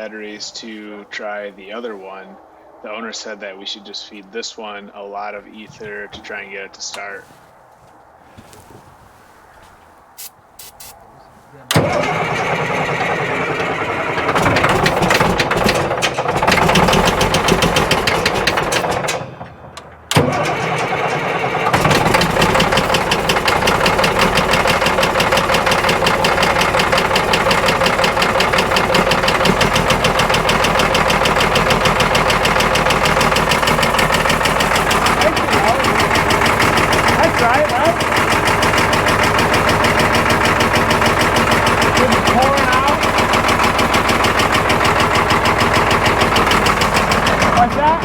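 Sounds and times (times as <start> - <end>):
diesel engine running: 5.5 - 7.4, 8.4 - 48.0
starter motor cranking: 11.7 - 48.0.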